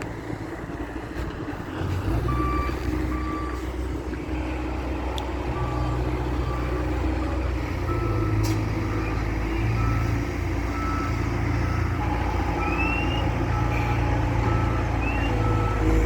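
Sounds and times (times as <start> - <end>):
diesel loader engine running: 0.0 - 16.0
reversing alarm beeping: 2.3 - 3.8, 5.5 - 16.0.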